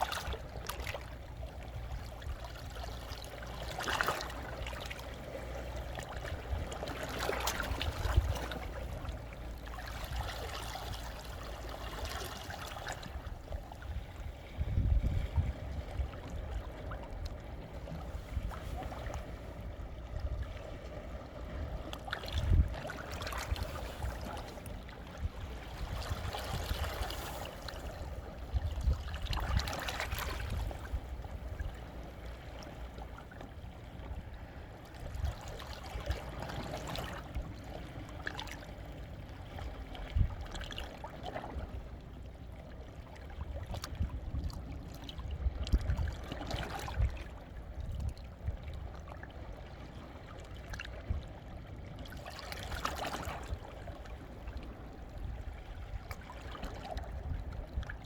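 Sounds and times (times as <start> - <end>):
sea waves washing over rocks: 2.6 - 33.2.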